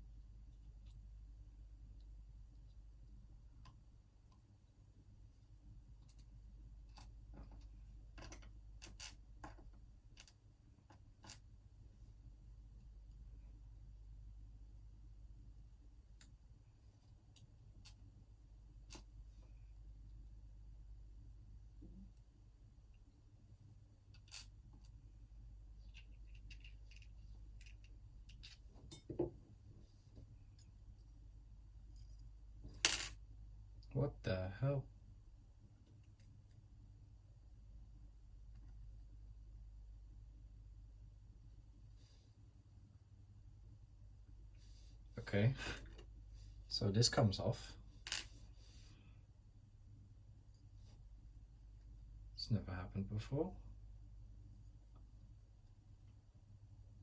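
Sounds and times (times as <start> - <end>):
small metallic clicks and taps: 25.9 - 29.3.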